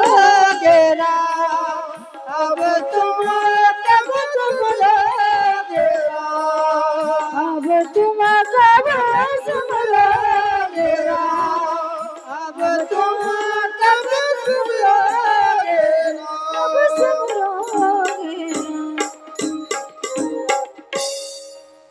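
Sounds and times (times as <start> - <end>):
woman singing: 0.0 - 20.2
hand cymbals: 16.6 - 21.9.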